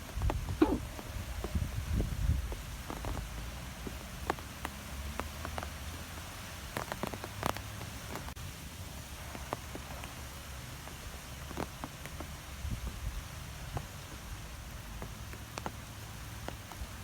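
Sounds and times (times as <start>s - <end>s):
leaves rustling in wind: 0.0s - 17.0s
low rumble of wind: 0.0s - 17.0s
light ticks: 2.3s - 8.4s, 10.8s - 17.0s.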